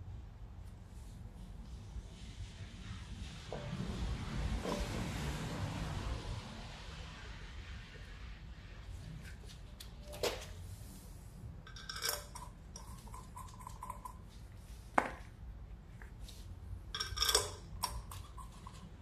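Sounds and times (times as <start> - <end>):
metal tools clinking: 11.7 - 14.2, 16.9 - 18.9
metallic clattering: 11.7 - 14.2.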